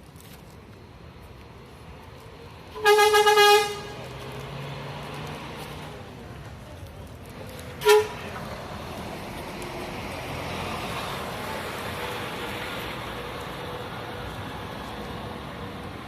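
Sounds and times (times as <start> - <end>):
bus horn honking: 2.7 - 4.1, 7.8 - 8.4.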